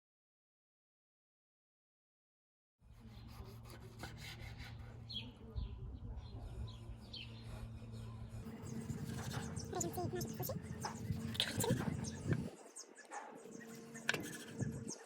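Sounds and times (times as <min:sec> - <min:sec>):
small birds chirping: 0:02.9 - 0:15.0
low steady hum: 0:03.0 - 0:12.7.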